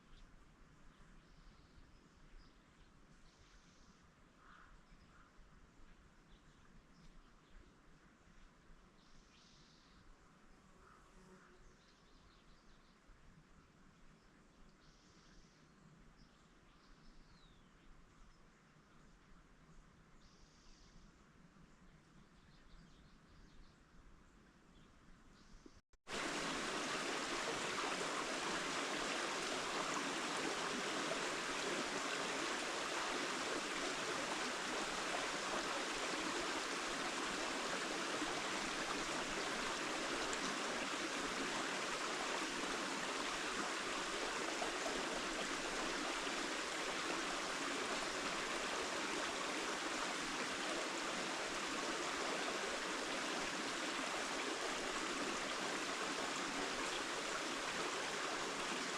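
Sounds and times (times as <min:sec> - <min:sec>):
flowing water rushing: 0:26.1 - 0:58.9.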